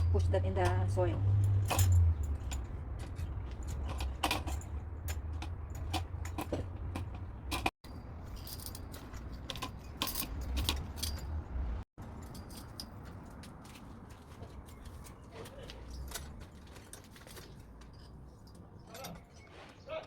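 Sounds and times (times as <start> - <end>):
sharp clicks and knocks: 0.0 - 7.8
metal parts clinking and rattling: 0.0 - 13.8, 14.7 - 19.4.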